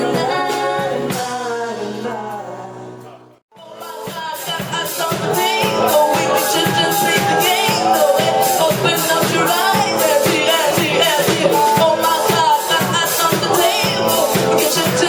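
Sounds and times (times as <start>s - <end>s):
live trio playing upbeat groove: 3.8s - 15.0s.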